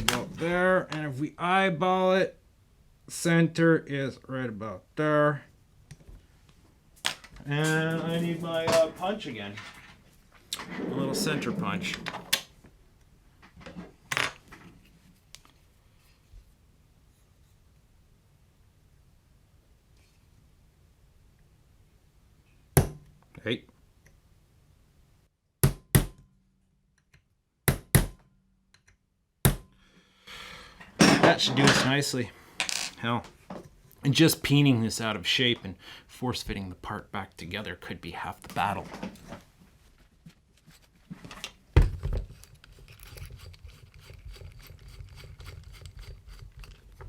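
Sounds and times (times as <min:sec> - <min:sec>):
tools clicking and tapping: 0:26.9 - 0:29.7, 0:42.2 - 0:47.0.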